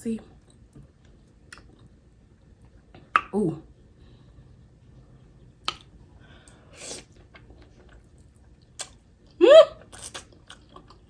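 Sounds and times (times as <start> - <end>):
wet chewing clicks: 5.6 - 6.0, 7.2 - 9.0.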